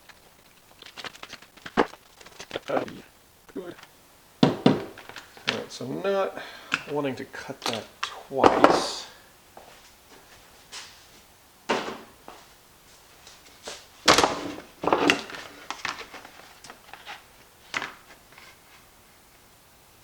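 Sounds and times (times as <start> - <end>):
tools and parts clattering: 7.6 - 9.1, 14.0 - 17.2.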